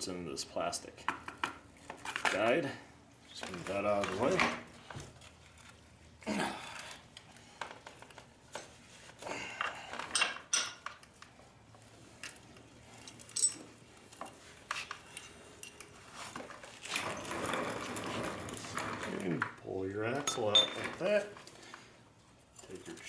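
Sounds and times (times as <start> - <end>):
metal tools clinking: 12.9 - 14.4, 20.2 - 21.3.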